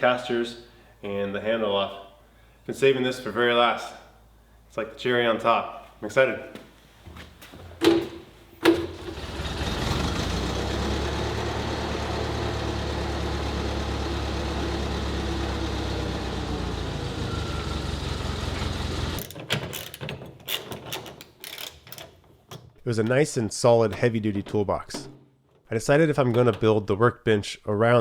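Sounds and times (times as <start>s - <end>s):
low mechanical rumble: 9.1s - 19.2s.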